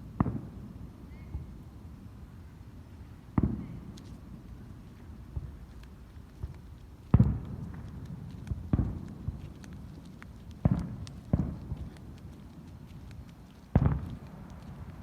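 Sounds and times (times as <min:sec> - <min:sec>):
fireworks booming: 0:13.7 - 0:14.4.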